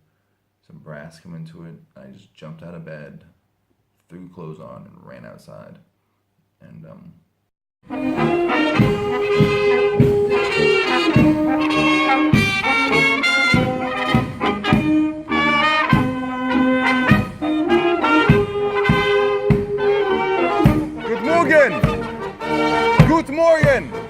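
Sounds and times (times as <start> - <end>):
brass band playing: 7.8 - 24.0
bass drum beat: 8.1 - 14.9, 17.1 - 19.9, 20.7 - 24.0.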